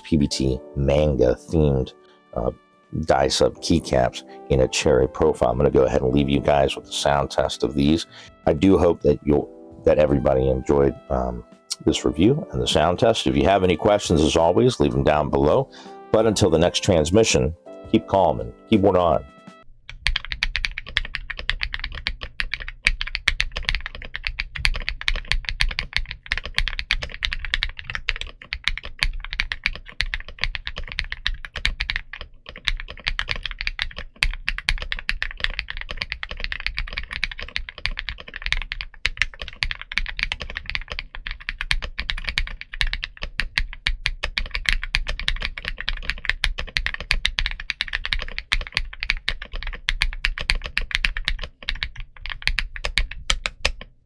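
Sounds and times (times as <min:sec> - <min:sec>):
fast mechanical keyboard typing: 0:19.9 - 0:53.9.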